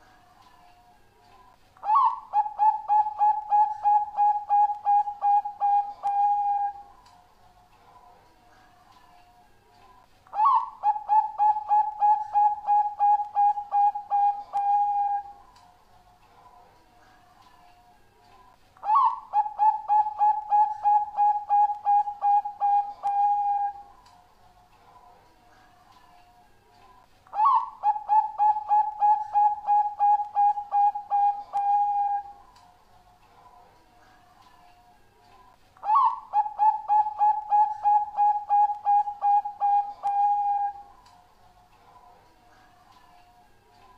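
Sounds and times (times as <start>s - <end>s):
dove cooing: 1.8s - 6.9s, 10.3s - 15.4s, 18.8s - 23.9s, 27.3s - 32.4s, 35.8s - 40.9s.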